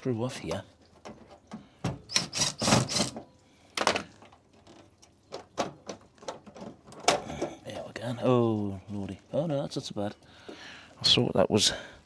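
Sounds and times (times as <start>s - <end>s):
screwdriver clicking and knocking: 1.9s - 3.2s
plastic panel being handled: 2.8s - 8.0s.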